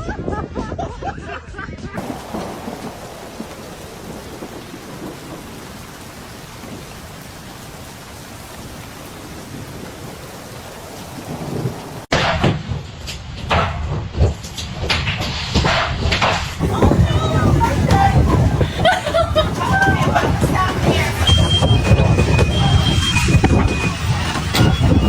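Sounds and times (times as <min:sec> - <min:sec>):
loud uneven noise: 0:02.0 - 0:12.1, 0:16.6 - 0:25.0
strong wind blowing: 0:02.0 - 0:12.1, 0:16.6 - 0:25.0.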